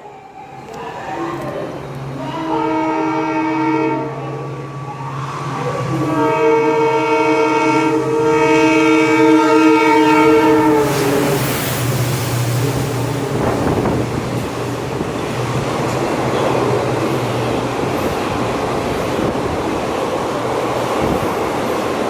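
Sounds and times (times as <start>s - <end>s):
train running by: 0.0s - 22.0s
train horn blast: 2.2s - 11.7s.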